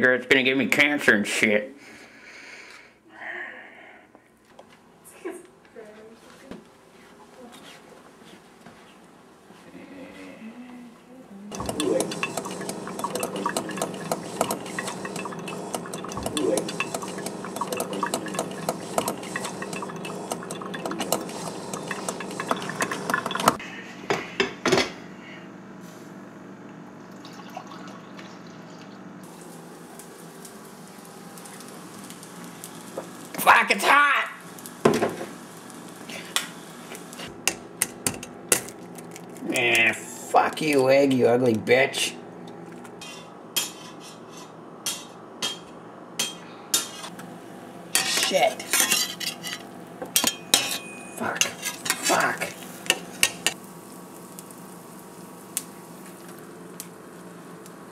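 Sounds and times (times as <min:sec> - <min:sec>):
utensil clinking against a bowl: 0:11.6 - 0:23.6, 0:48.0 - 0:52.2.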